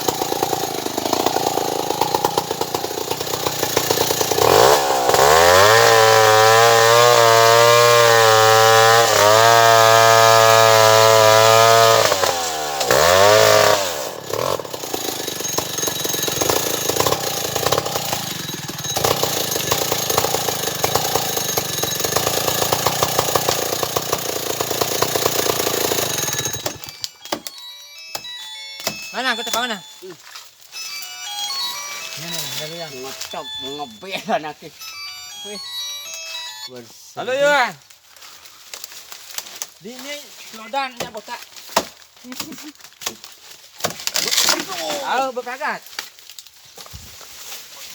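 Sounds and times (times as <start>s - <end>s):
chainsaw idling unevenly: 0.0s - 27.0s
chainsaw revving: 0.0s - 27.1s, 31.4s - 36.2s.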